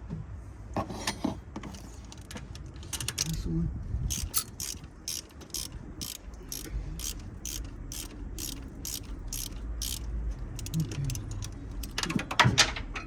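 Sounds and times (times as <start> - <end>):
ratchet wrench clicking: 4.1 - 12.2.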